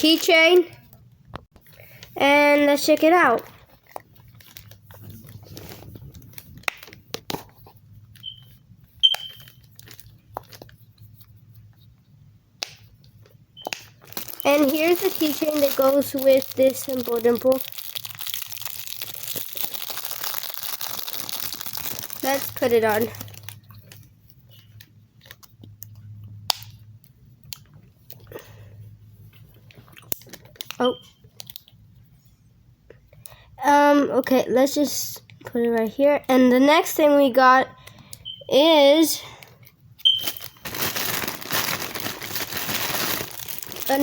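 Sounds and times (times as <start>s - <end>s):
plastic packaging handled: 1.6s - 11.3s, 13.6s - 24.1s, 40.0s - 44.0s.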